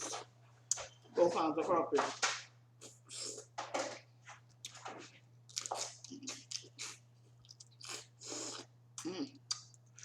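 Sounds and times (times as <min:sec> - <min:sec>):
chewing and mouth smacks: 0:05.5 - 0:10.0.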